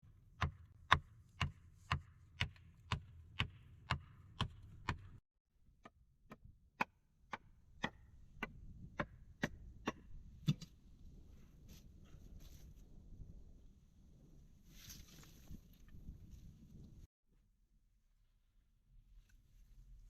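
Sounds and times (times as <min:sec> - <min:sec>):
axe chopping wood: 0:00.4 - 0:05.2, 0:05.8 - 0:10.7.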